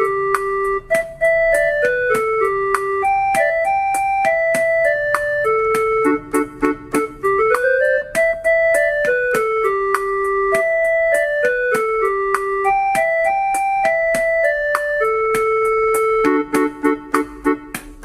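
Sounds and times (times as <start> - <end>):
electronic keyboard melody: 0.0 - 18.0.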